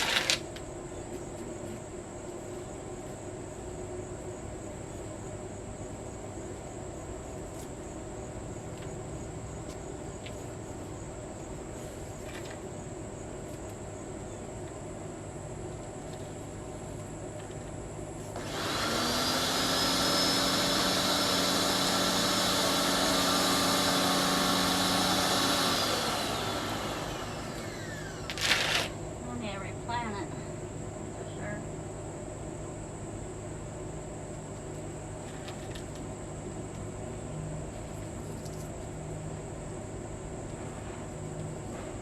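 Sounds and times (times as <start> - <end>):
electric motor machine whining: 18.4 - 29.0.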